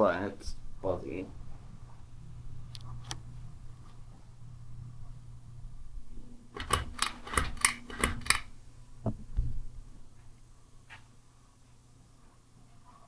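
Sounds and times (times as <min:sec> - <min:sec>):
ceiling fan motor humming: 0:00.0 - 0:13.0
sharp clicks: 0:06.6 - 0:08.6.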